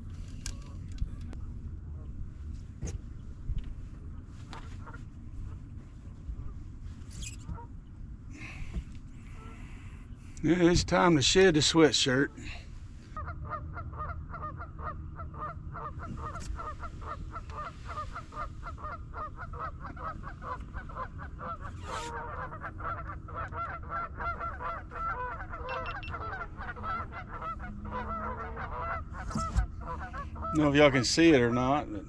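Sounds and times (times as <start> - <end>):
low steady rumble: 0.0 - 32.0
geese honking and squawking: 13.2 - 32.0.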